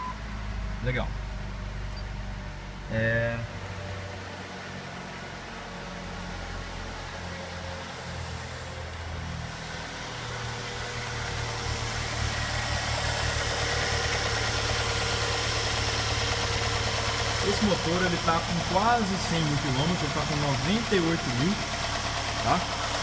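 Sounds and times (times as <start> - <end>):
car engine idling: 0.0 - 23.0
fast light engine ticking: 9.4 - 23.0.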